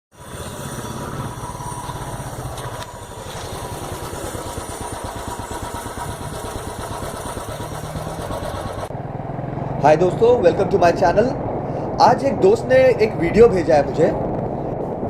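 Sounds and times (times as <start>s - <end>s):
single-cylinder motorcycle engine running: 0.2s - 11.7s.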